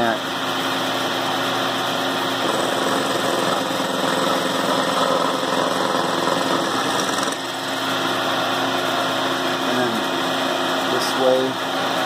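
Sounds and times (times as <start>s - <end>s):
milling machine cutting metal: 2.4s - 7.5s.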